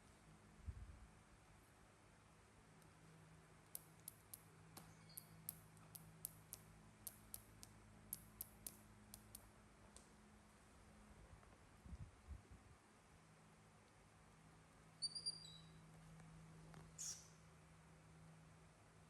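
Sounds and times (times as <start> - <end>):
faint sharp clicks: 3.7 - 10.1.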